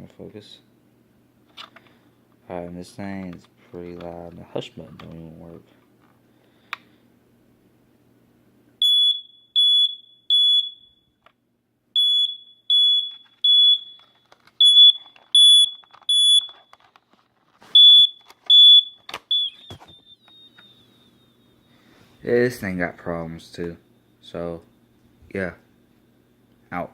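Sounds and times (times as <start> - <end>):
smoke alarm beeping: 8.8 - 11.2, 12.0 - 16.9, 17.6 - 22.5.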